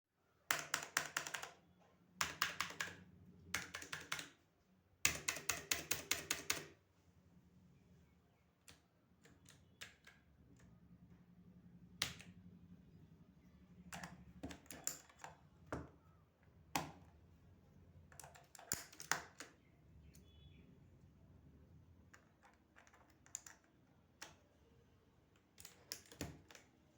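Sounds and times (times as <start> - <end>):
mechanical keyboard typing: 0.5 - 1.6, 2.2 - 4.4, 5.0 - 6.8, 9.3 - 10.8, 13.8 - 15.9, 18.0 - 19.6, 22.1 - 24.6, 25.4 - 26.8.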